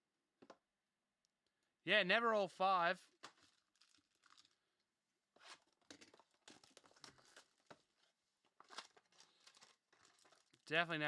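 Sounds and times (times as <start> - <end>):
foil wrapper crinkling: 3.2 - 4.6, 5.4 - 10.7.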